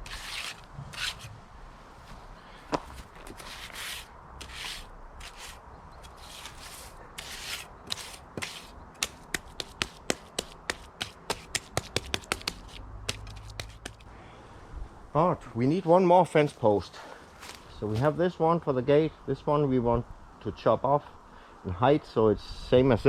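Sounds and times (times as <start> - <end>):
hand tool scraping: 0.0 - 1.3, 2.7 - 14.1
sharp taps: 8.4 - 14.1.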